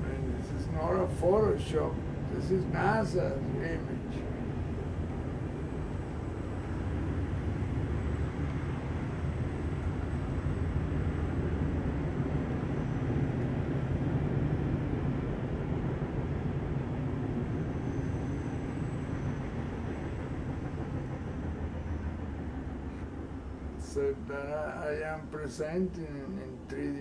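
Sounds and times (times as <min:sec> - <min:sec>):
low rumbling drone: 0:00.0 - 0:27.0
faint high whistle: 0:17.6 - 0:20.2.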